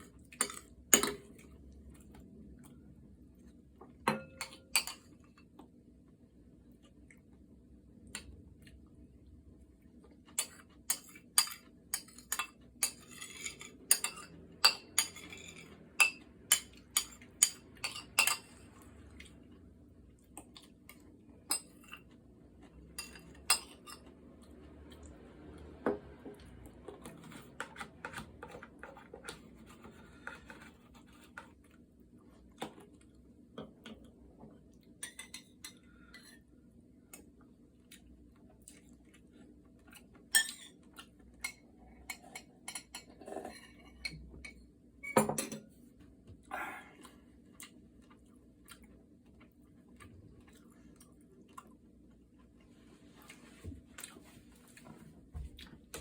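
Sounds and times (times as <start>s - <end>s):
cutlery clinking against dishes: 10.4s - 18.6s, 40.3s - 40.8s.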